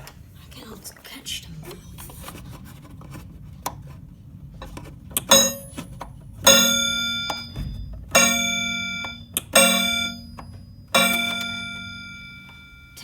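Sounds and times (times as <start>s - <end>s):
clock chime strikes: 5.2s - 13.0s.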